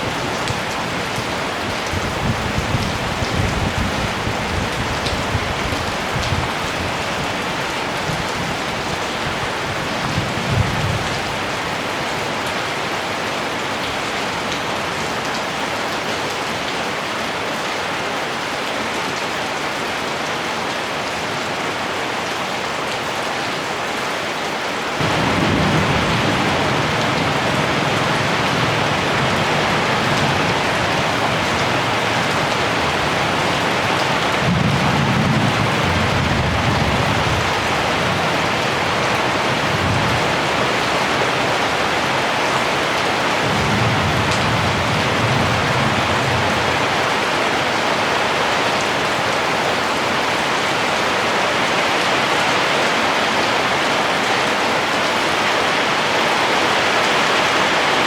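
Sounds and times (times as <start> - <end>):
heavy rain falling: 0.0 - 58.0
distant thunder rolling: 25.0 - 39.0, 43.4 - 46.8.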